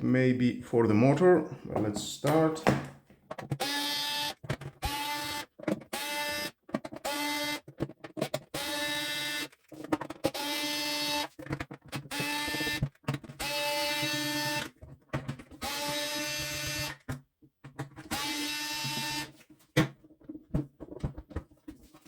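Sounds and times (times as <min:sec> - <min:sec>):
electric screwdriver running: 0:06.0 - 0:07.6, 0:12.1 - 0:12.8, 0:15.6 - 0:16.9, 0:18.1 - 0:19.3.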